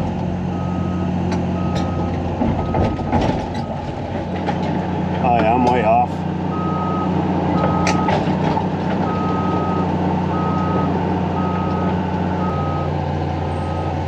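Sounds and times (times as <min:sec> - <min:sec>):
excavator diesel engine running: 0:00.0 - 0:14.0
travel alarm beeping: 0:00.5 - 0:02.8, 0:06.5 - 0:08.1, 0:09.1 - 0:12.9.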